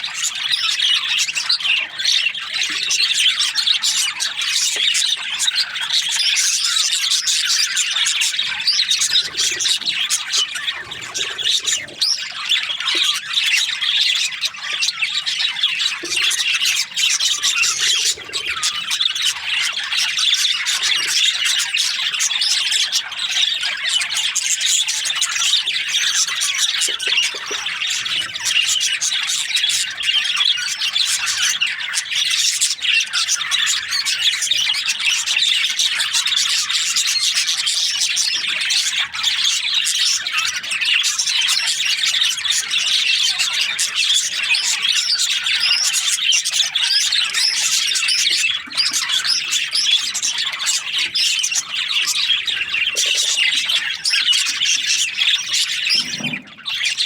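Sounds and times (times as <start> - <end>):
budgerigars chattering and chirping: 0.0 - 57.0.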